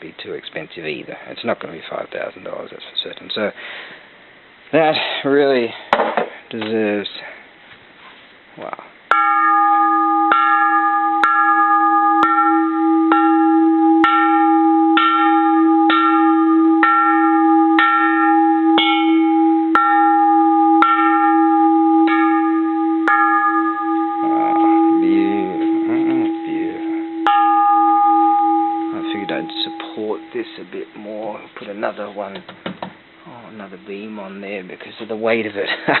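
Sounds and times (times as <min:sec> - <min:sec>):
temple bell ringing: 0:09.1 - 0:31.4.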